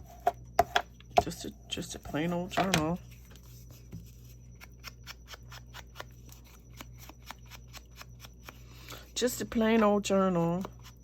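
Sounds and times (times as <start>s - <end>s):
scissors cutting paper: 4.6s - 8.6s.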